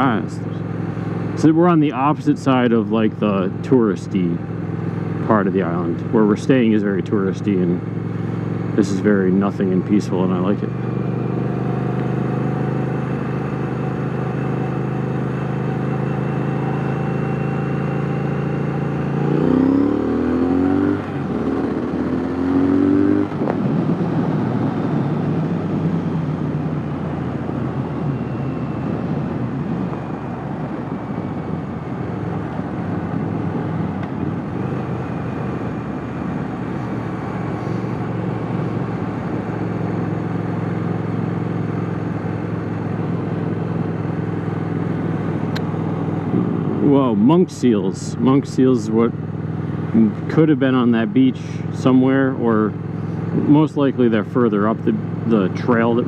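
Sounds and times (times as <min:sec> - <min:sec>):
motorcycle engine revving: 0:00.0 - 0:56.0
wind rushing noise: 0:19.3 - 0:39.5.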